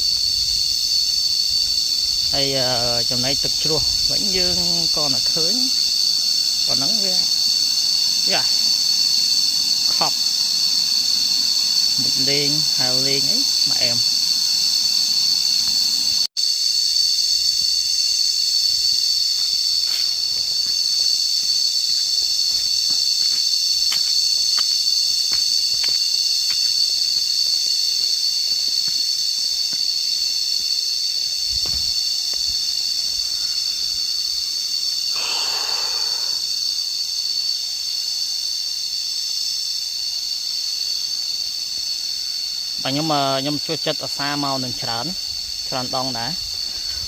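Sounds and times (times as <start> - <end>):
cicadas droning: 0.0 - 47.0.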